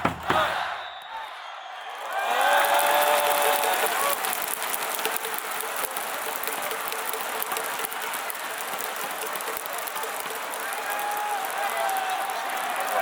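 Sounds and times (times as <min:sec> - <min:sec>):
crowd cheering: 0:00.0 - 0:13.0
people clapping: 0:00.0 - 0:13.0.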